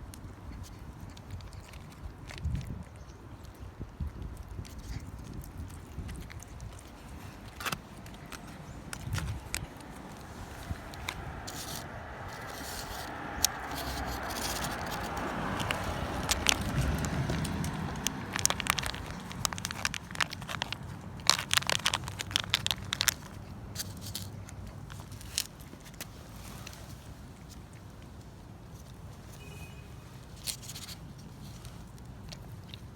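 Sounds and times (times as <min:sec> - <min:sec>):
cat licking and chewing: 0:00.0 - 0:32.9.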